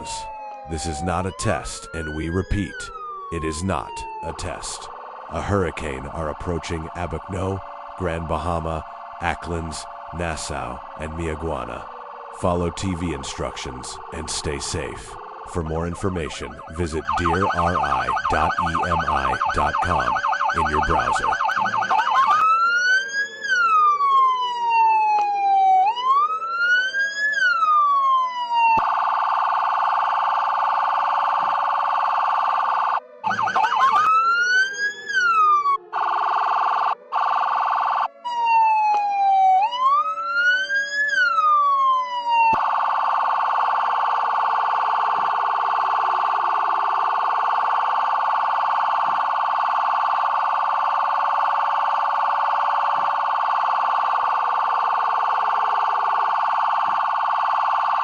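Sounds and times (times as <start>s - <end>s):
steady siren tone: 0.0s - 58.0s
wailing siren: 0.0s - 58.0s.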